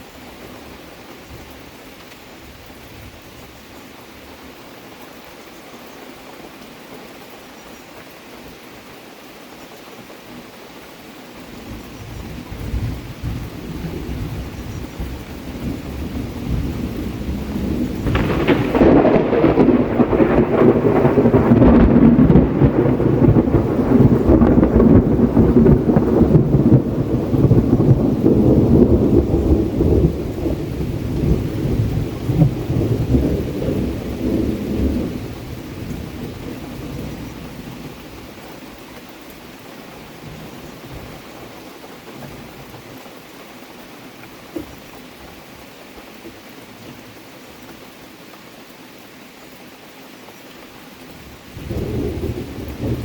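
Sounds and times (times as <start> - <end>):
rain: 0.0 - 53.0
rolling thunder: 11.6 - 38.2, 51.5 - 53.0.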